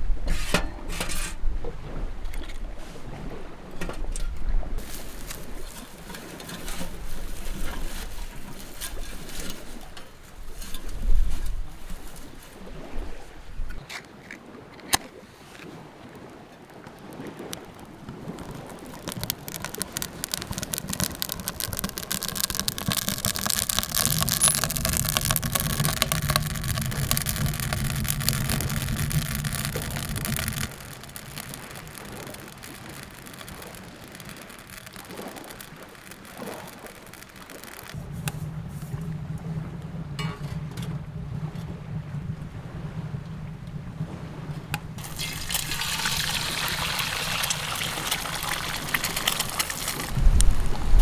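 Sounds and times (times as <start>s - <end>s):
rain spattering: 4.8s - 12.6s, 16.6s - 39.6s, 43.1s - 51.0s
strong wind: 17.4s - 34.5s, 38.0s - 51.0s.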